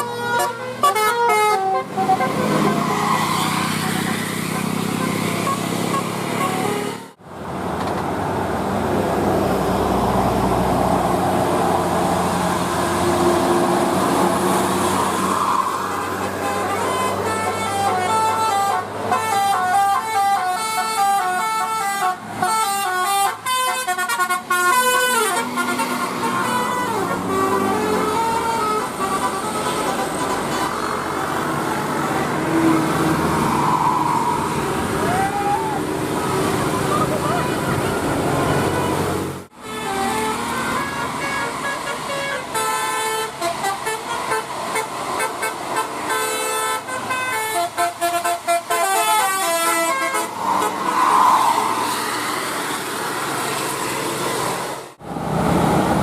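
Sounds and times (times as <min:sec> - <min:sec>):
multi-tone bus horn: 0:00.0 - 0:07.2, 0:13.1 - 0:51.0
road traffic noise: 0:00.0 - 0:56.0
bus engine running: 0:34.4 - 0:51.0
brief rising call: 0:50.2 - 0:52.7.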